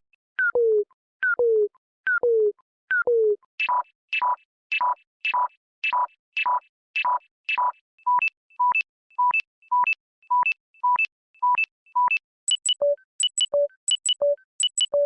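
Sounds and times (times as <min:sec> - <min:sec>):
electronic alert blips and tone: 0:12.5 - 0:15.0
electronic two-note beeps: 0:12.5 - 0:15.0.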